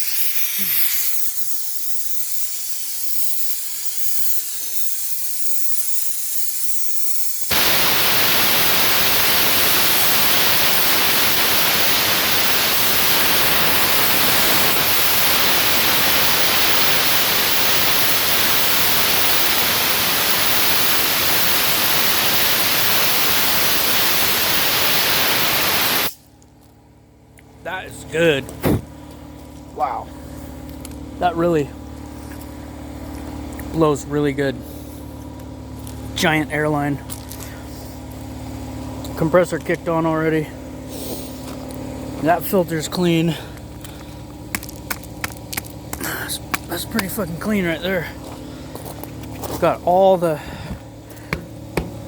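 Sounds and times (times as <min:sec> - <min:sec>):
compressed air blasting from nozzle: 0:00.0 - 0:26.2, 0:40.9 - 0:41.4.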